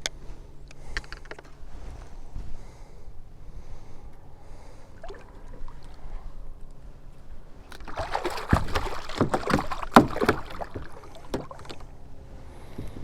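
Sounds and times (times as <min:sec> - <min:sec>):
water sloshing against kayak: 0:04.4 - 0:13.0
loud irregular splashes: 0:04.9 - 0:06.2, 0:07.7 - 0:12.0
knocks on hull: 0:07.8 - 0:11.8.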